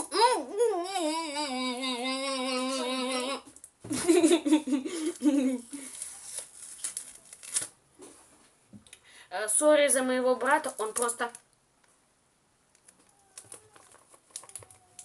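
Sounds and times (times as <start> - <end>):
young voice humming: 0.0 - 3.5.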